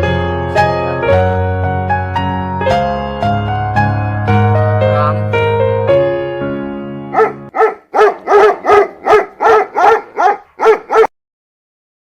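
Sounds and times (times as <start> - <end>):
dog barking sharply: 7.1 - 11.1.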